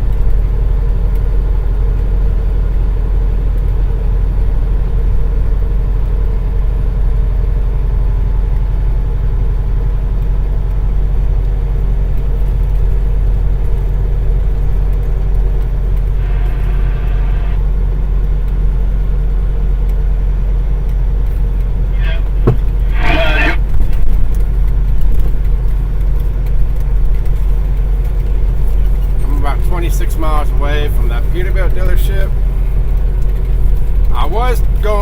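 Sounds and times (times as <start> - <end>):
truck diesel engine and road noise: 0.0 - 35.0
high buzzing tone: 16.1 - 17.6.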